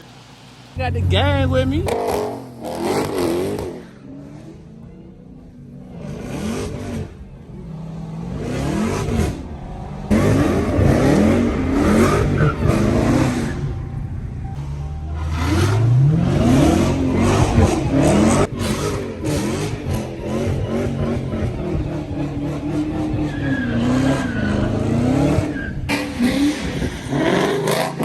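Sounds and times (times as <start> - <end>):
car engine revving: 0.0 - 28.0.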